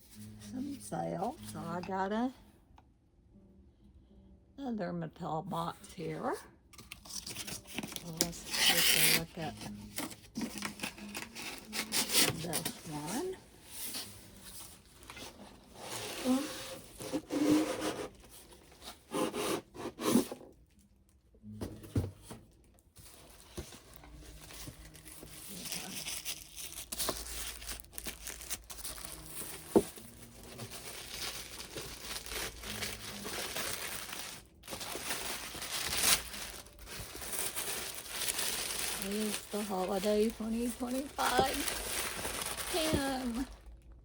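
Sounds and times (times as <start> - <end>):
packaging tearing and crinkling: 24.1 - 43.6.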